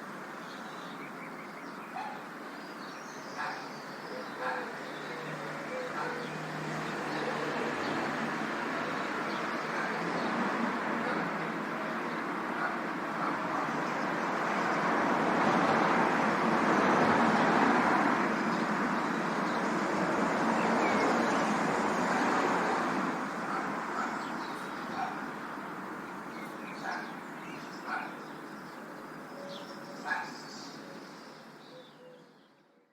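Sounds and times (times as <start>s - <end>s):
road traffic passing: 0.0s - 32.8s.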